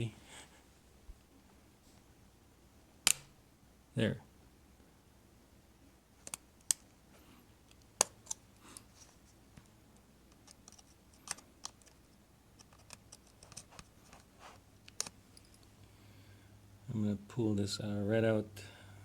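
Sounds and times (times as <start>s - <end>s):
plastic clicks and snaps: 3.1s - 3.3s, 6.2s - 7.0s.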